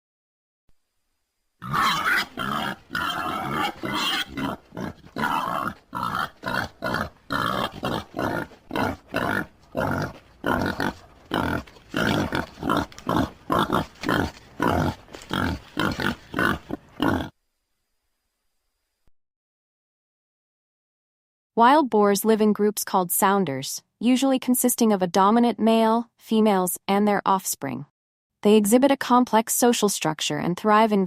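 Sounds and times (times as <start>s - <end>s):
wild boar grunting: 1.6s - 17.4s.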